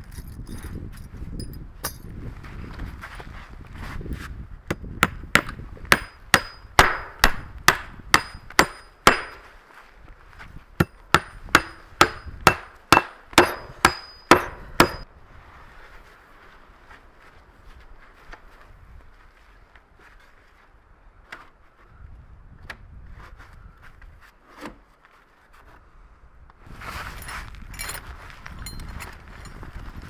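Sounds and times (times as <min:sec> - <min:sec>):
hammer striking metal: 0:05.4 - 0:09.4, 0:10.8 - 0:15.0.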